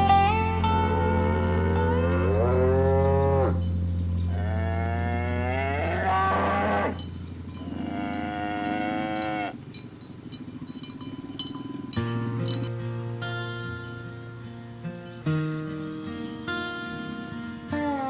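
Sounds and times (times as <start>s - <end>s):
light clinks: 0.0s - 12.8s, 13.8s - 18.0s
cattle mooing: 0.1s - 3.6s, 4.3s - 7.0s, 7.6s - 9.6s, 17.8s - 18.0s.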